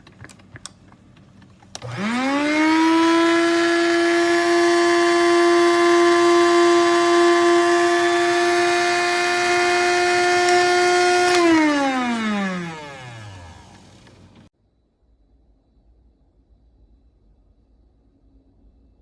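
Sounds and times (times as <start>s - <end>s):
coffee grinder motor whine: 1.2s - 14.5s.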